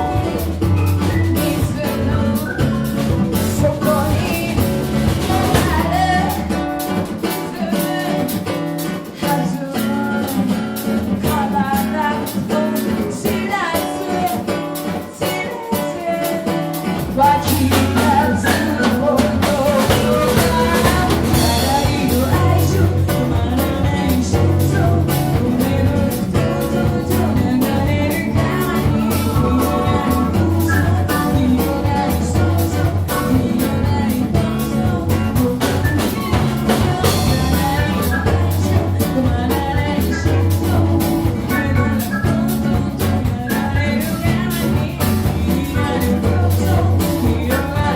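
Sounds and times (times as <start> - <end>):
deep bass: 0.0 - 6.8, 17.0 - 47.9
music with guitar and drums: 0.0 - 47.9.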